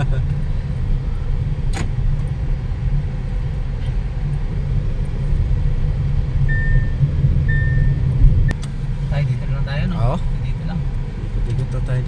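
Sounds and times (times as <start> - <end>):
car engine and road rumble: 0.0 - 12.0
short high beep: 6.5 - 8.0.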